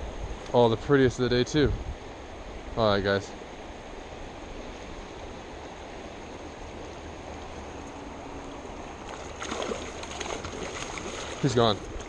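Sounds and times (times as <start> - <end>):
mountain stream rushing: 0.0 - 12.0
splashing in water: 9.0 - 11.8.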